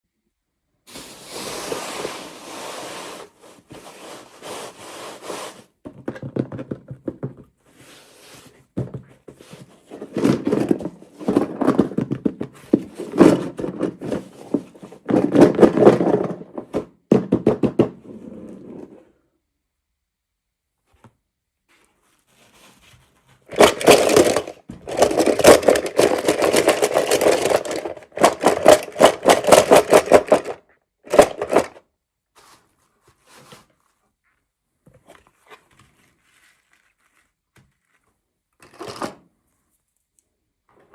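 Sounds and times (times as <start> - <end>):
toy packaging crinkling: 23.5 - 31.8.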